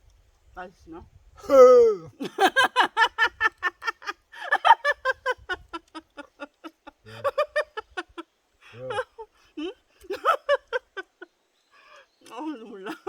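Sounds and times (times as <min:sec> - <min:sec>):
person laughing hard: 0:07.1 - 0:08.2.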